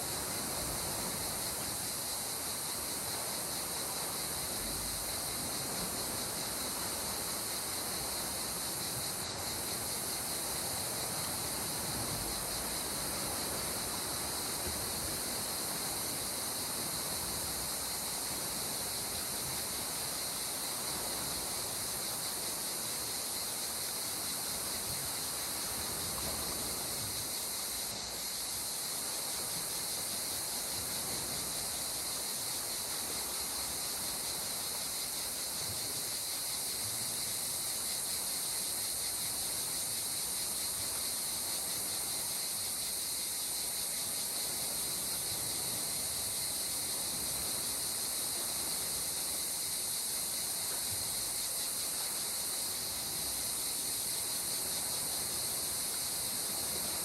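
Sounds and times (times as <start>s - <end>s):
high-pitched insect chorus: 0.0s - 57.0s.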